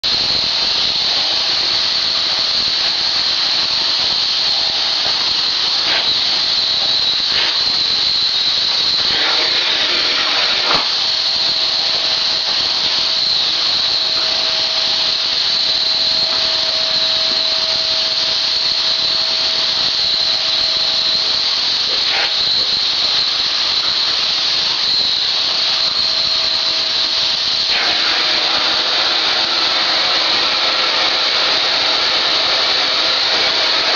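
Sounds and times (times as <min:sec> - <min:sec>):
vacuum cleaner whining: 0:00.0 - 0:33.9.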